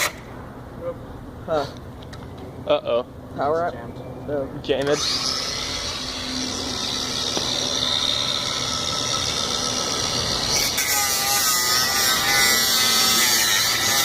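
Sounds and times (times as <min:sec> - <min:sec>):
angle grinder cutting metal: 0:04.9 - 0:14.0.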